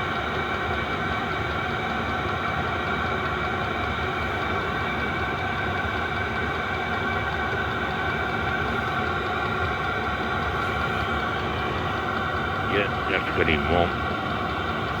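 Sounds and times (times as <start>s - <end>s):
heater fan and burner rushing: 0.0s - 15.0s
steady hum: 10.6s - 15.0s.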